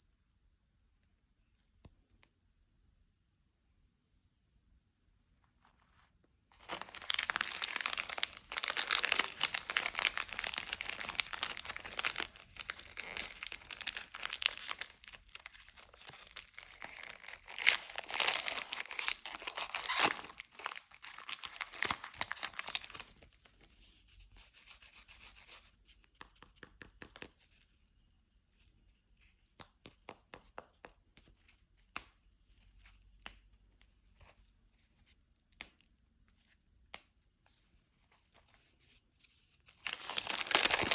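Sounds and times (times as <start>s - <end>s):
candy wrapper crinkling: 6.5s - 23.6s, 39.6s - 40.9s.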